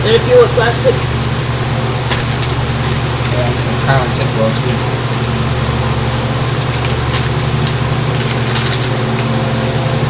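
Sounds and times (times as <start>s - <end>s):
microwave oven humming: 0.0s - 10.0s
faint crackles of metal cans: 6.7s - 9.3s.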